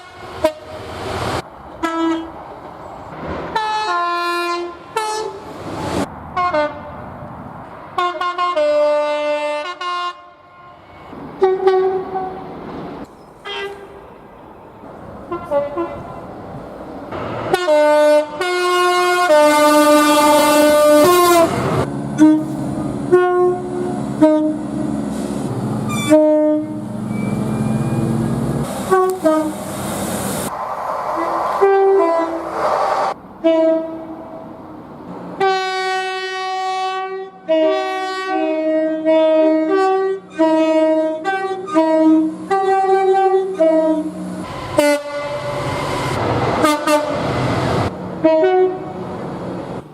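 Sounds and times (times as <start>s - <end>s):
locomotive air horn blasts: 0.0s - 0.8s, 1.8s - 2.3s, 3.5s - 5.4s, 6.4s - 6.9s, 8.0s - 12.4s, 13.4s - 14.0s, 15.3s - 16.2s, 17.5s - 24.9s, 25.9s - 28.2s, 28.8s - 29.6s, 33.4s - 34.2s, 35.4s - 47.3s, 48.2s - 49.0s.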